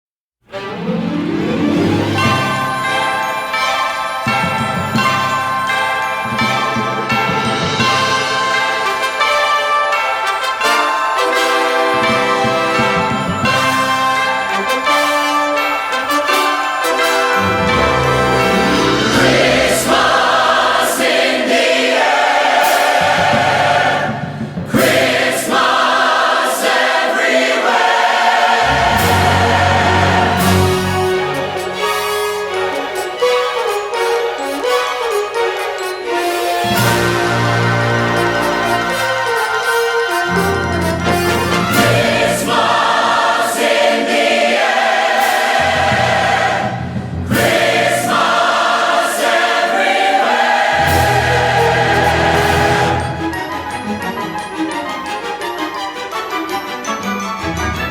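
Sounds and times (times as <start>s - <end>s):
orchestra playing: 0.4s - 57.9s
large choir singing: 7.8s - 15.8s, 16.5s - 55.2s.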